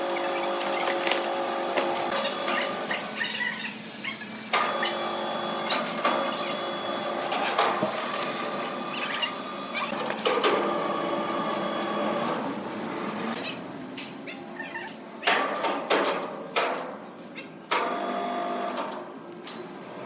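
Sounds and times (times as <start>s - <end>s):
machine humming: 0.0s - 13.4s.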